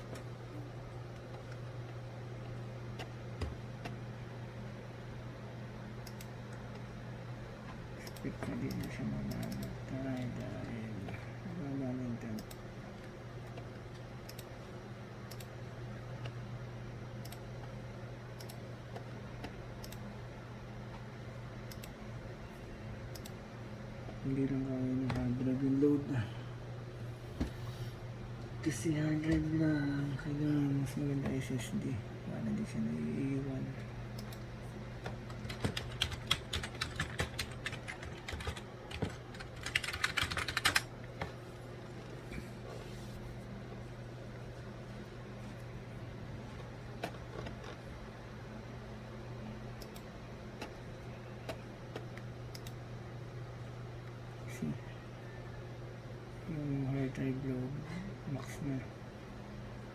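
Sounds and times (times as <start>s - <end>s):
steady low hum: 0.0s - 59.9s
computer mouse clicks: 6.0s - 6.8s, 8.0s - 10.5s, 12.3s - 12.6s, 13.4s - 14.5s, 15.3s - 15.5s, 17.2s - 17.4s, 18.4s - 20.0s, 21.7s - 22.0s, 23.1s - 23.4s, 51.5s - 52.8s
computer keyboard typing: 8.0s - 12.6s, 35.0s - 41.3s.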